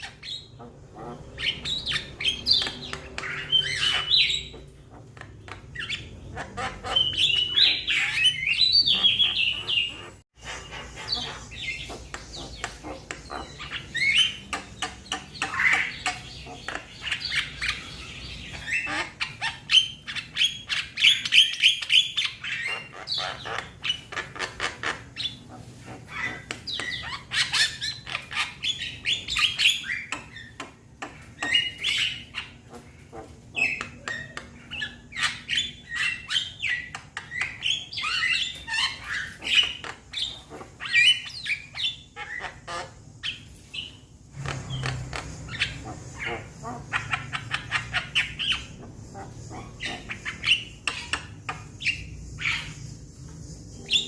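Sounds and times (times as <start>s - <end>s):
bird squawking and chirping: 0.0s - 54.0s.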